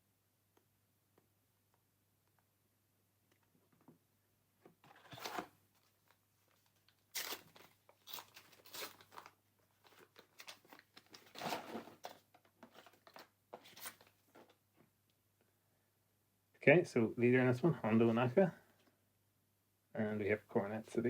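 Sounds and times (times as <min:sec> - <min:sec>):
wrapper tearing and crinkling: 0:06.9 - 0:14.1.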